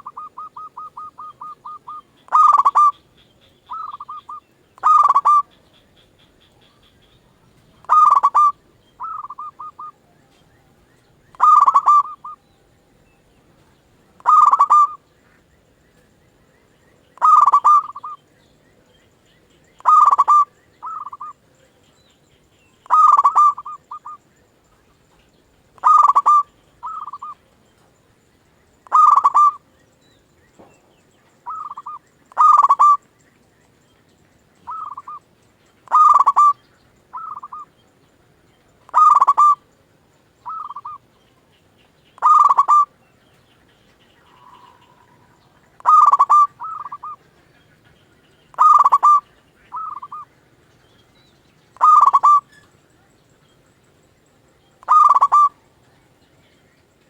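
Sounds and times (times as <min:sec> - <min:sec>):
dove cooing: 0:00.0 - 0:15.1, 0:17.2 - 0:18.3, 0:19.8 - 0:21.8, 0:22.8 - 0:24.2, 0:25.8 - 0:27.5, 0:28.8 - 0:29.7, 0:31.4 - 0:33.1, 0:34.6 - 0:35.2, 0:35.8 - 0:37.8, 0:38.8 - 0:39.7, 0:40.4 - 0:41.2, 0:42.2 - 0:43.0, 0:43.6 - 0:50.3, 0:51.8 - 0:53.1, 0:54.8 - 0:55.8.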